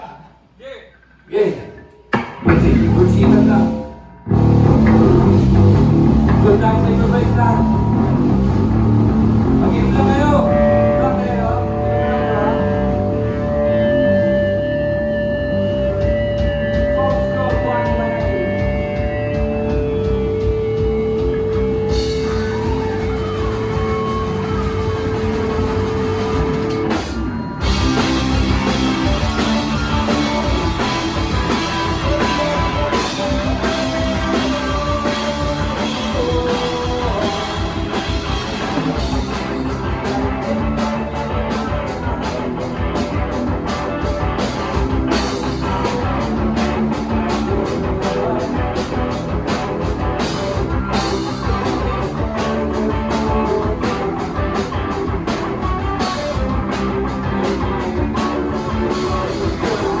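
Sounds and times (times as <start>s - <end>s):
live rock band playing: 1.9s - 60.0s
drums fast beat: 2.0s - 13.6s, 15.8s - 60.0s.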